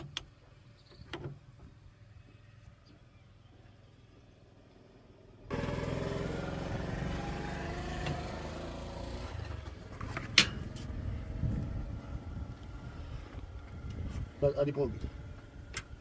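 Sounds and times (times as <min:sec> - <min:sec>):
skid loader engine running: 0:05.5 - 0:14.0.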